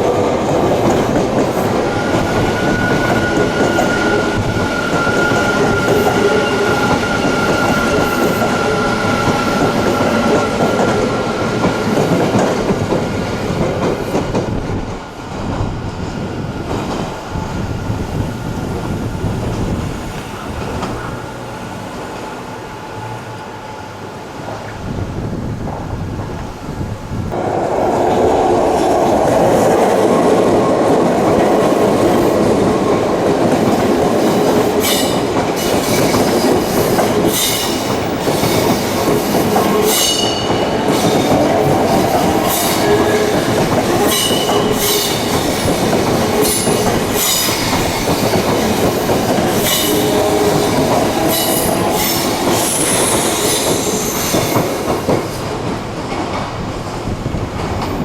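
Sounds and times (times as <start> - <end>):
train wheels on rails: 0.0 - 58.0
high wheel squeals: 1.8 - 11.6.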